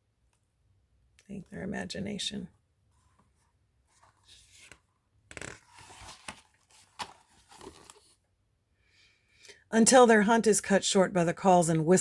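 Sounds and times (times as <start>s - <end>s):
paper pages rustling: 3.0s - 8.2s.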